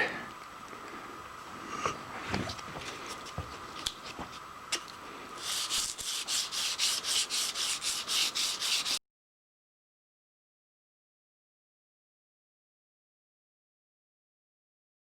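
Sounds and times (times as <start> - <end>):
sandpaper rasping strokes: 5.4 - 9.0.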